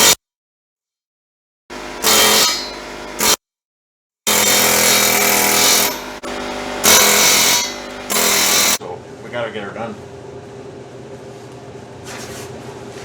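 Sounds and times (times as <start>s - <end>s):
pneumatic air hammer rattling: 4.3s - 8.8s.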